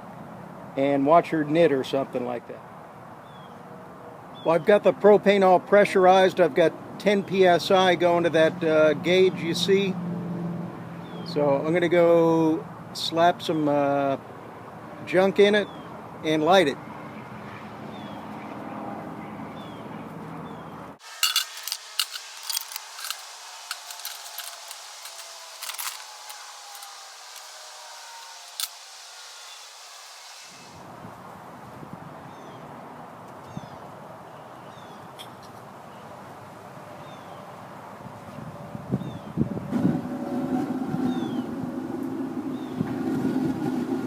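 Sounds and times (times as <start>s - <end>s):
metal parts clinking and clattering: 21.0s - 28.8s
propane burner humming: 21.0s - 30.8s.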